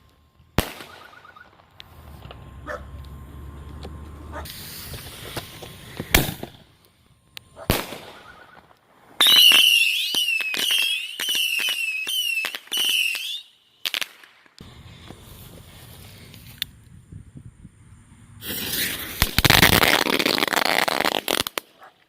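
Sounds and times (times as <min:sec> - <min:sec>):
whistling rockets cracking: 0:00.0 - 0:02.6, 0:04.2 - 0:14.8, 0:18.4 - 0:21.9
firework bangs: 0:00.6 - 0:02.5, 0:04.3 - 0:06.8, 0:07.6 - 0:14.6, 0:18.4 - 0:21.8.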